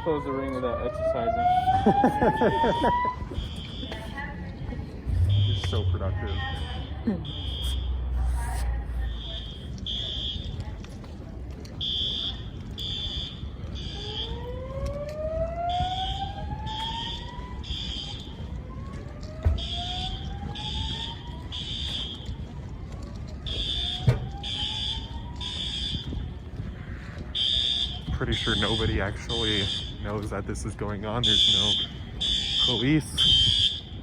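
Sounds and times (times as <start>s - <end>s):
slow whoop alarm tone: 0.7s - 4.0s, 5.1s - 10.5s
high beeping tone: 5.1s - 10.4s.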